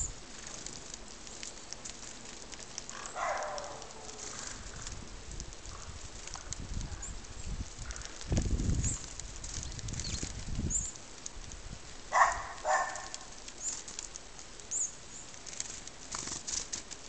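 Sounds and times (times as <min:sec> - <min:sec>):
faint high bird chirps: 0:14.7 - 0:15.0.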